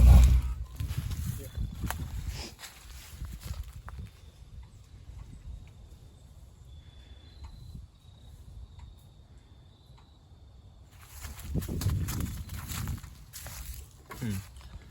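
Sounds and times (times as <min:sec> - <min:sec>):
low rumble: 0:00.0 - 0:01.5
rustling noise: 0:00.0 - 0:04.0
high insect trill: 0:05.4 - 0:14.6.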